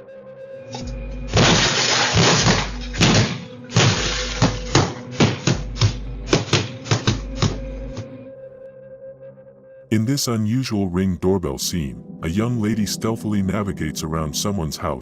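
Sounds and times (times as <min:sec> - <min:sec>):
low music drone: 0:00.0 - 0:15.0
axes hitting a car: 0:01.3 - 0:08.0.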